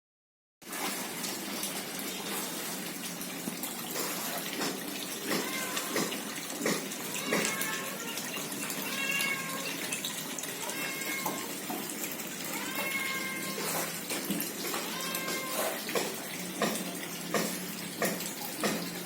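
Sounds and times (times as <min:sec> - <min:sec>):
water splashing into pond: 0:00.6 - 0:19.0.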